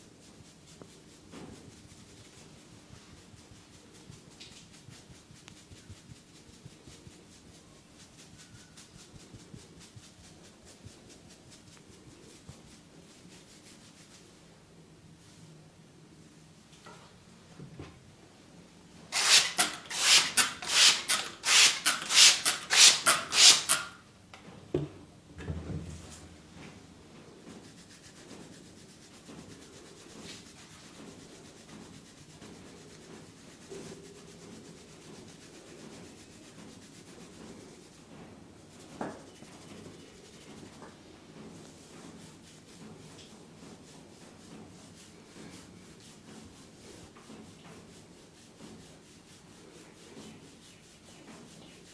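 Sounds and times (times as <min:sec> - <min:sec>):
hands rubbing briskly: 0:00.2 - 0:14.4, 0:19.1 - 0:24.0.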